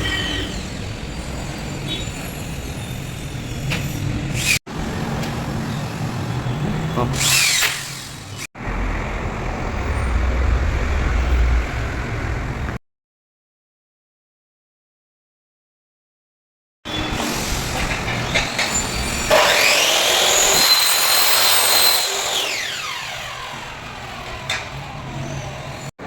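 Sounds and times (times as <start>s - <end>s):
power drill running: 7.2s - 8.4s, 19.0s - 24.9s.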